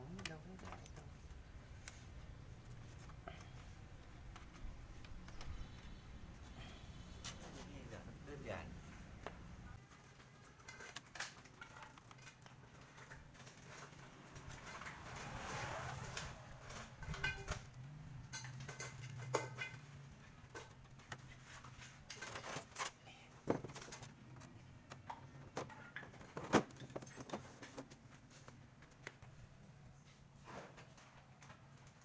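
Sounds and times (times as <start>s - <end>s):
small tools and screws clinking: 9.7s - 29.2s.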